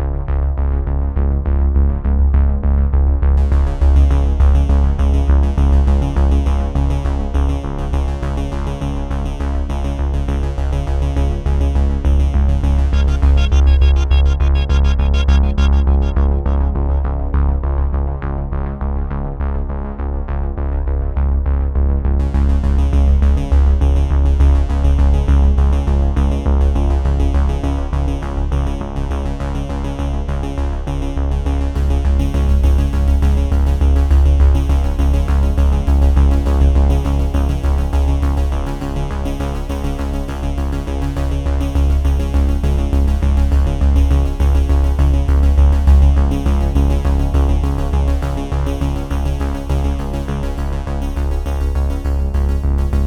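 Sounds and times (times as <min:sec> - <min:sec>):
pulsing bass: 0:00.0 - 0:53.0
synthesizer chords: 0:12.2 - 0:18.2.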